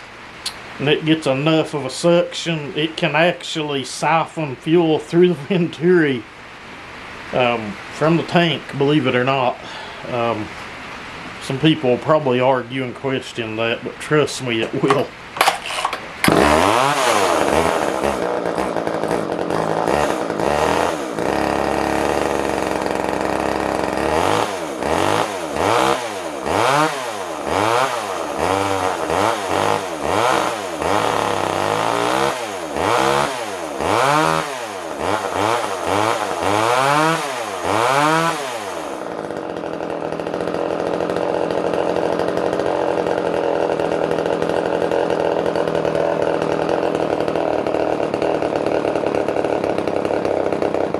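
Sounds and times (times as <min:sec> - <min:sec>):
chainsaw engine revving: 0:14.5 - 0:50.9.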